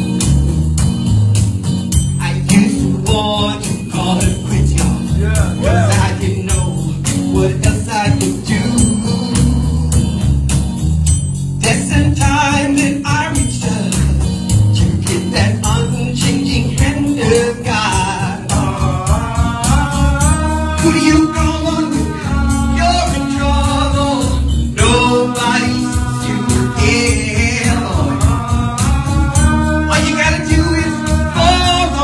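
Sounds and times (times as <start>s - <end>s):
blues-gospel band music: 0.0s - 32.0s
steady drum beat: 0.0s - 32.0s
person singing: 2.2s - 10.2s, 14.8s - 32.0s.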